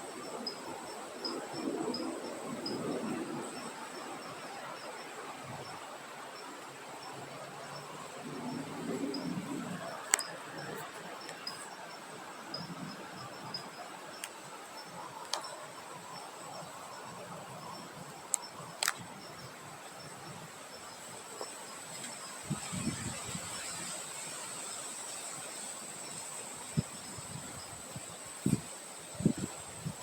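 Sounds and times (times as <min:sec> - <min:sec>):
soft wind: 0:00.0 - 0:30.0
sharp clicks: 0:18.3 - 0:19.0.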